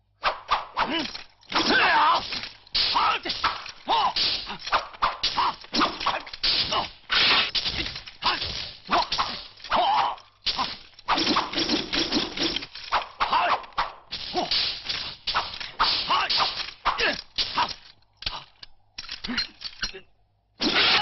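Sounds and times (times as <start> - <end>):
whooshes of swung limbs: 0.2 - 1.1, 2.8 - 9.5
punch and kick impacts: 1.5 - 9.5.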